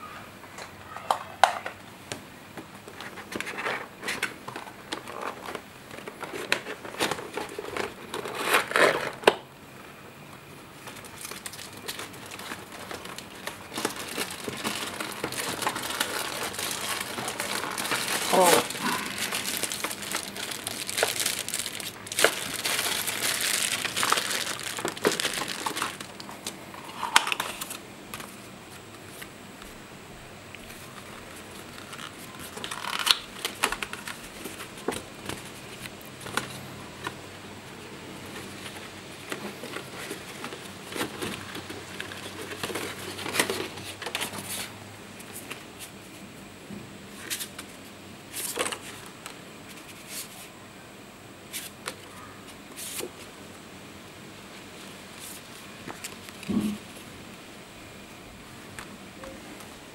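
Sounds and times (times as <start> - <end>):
plastic wrap crinkling: 10.8 - 28.4, 30.6 - 36.6, 38.3 - 45.6.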